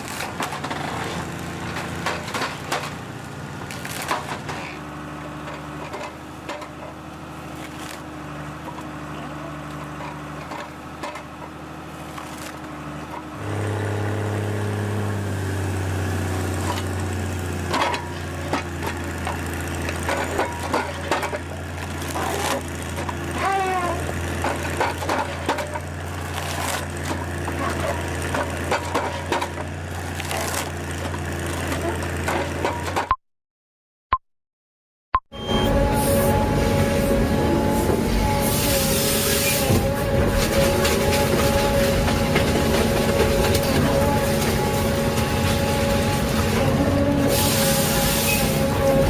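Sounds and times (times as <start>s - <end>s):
heavy machine engine: 0.0s - 33.1s, 35.4s - 49.0s
wood cracking and knocking: 16.6s - 33.1s, 39.7s - 46.8s
brief squeal: 35.3s - 37.0s, 47.3s - 48.6s.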